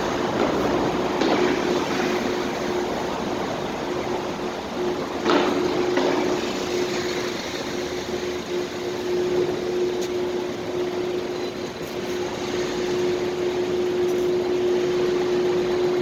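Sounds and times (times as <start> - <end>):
constant low hum: 0.0 - 16.0.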